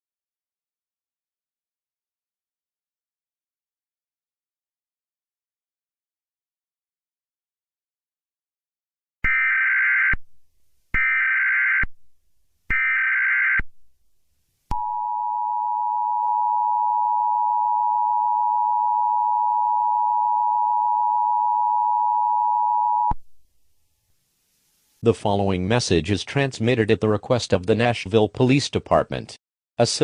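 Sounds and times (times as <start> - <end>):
two-tone attention signal beep: 14.7 - 23.2.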